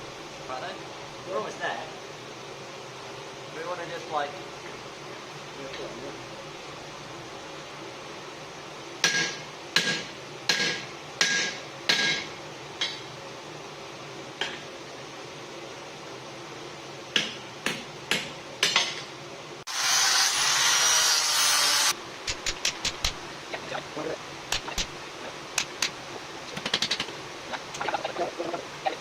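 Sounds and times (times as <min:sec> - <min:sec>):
loud steady hiss: 0:00.0 - 0:29.0
hammer striking steel on anvil: 0:09.0 - 0:13.1, 0:17.2 - 0:19.1.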